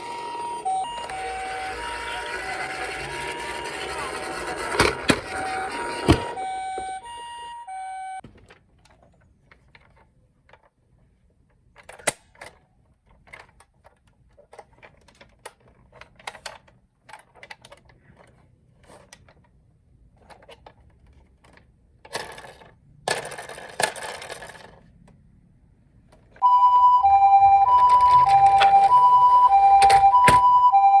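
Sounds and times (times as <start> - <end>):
ambulance two-tone siren: 0.0 - 8.2, 26.4 - 31.0.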